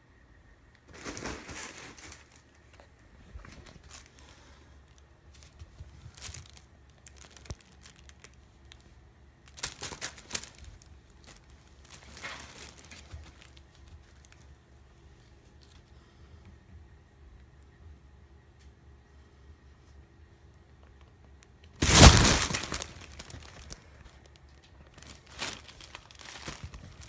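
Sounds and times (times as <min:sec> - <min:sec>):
crinkly fabric rustling: 0:00.8 - 0:08.9, 0:09.5 - 0:14.4, 0:21.8 - 0:27.0.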